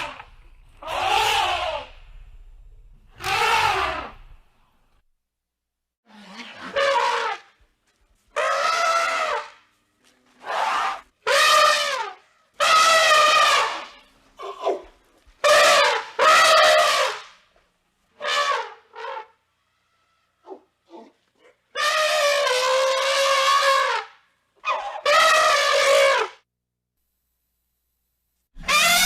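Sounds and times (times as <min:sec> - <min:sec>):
elephant trumpeting: 0:00.0 - 0:02.0, 0:03.2 - 0:04.3, 0:06.2 - 0:07.5, 0:08.4 - 0:09.6, 0:10.4 - 0:14.8, 0:15.4 - 0:17.2, 0:18.2 - 0:20.6, 0:21.7 - 0:26.4, 0:28.6 - 0:29.0.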